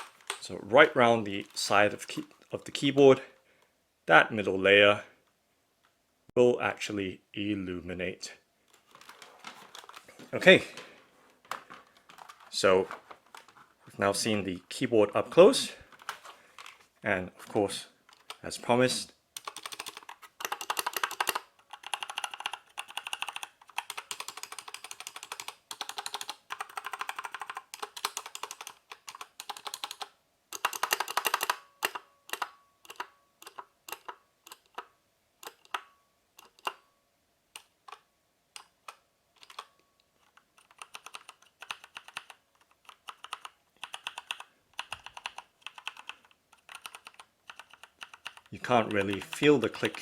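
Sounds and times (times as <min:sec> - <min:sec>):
mechanical keyboard typing: 0:19.4 - 0:36.8, 0:38.6 - 0:50.0.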